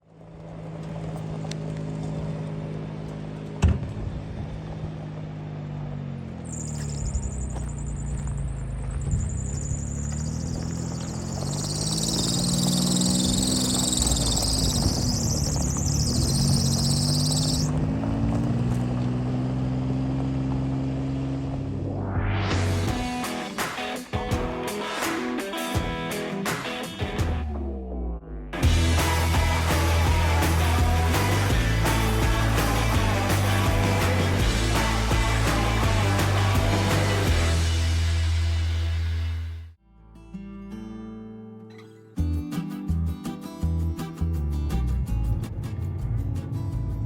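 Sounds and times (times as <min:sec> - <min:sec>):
diesel machinery engine: 0:00.0 - 0:23.2, 0:27.2 - 0:39.8.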